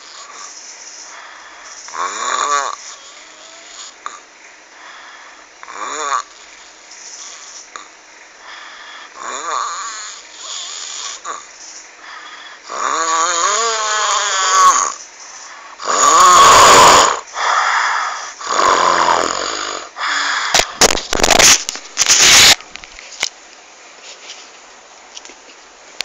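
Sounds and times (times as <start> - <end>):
rasping snoring: 0.0 - 4.3, 5.6 - 7.9, 8.6 - 11.5, 12.2 - 20.7
sharp crackles: 20.6 - 23.0.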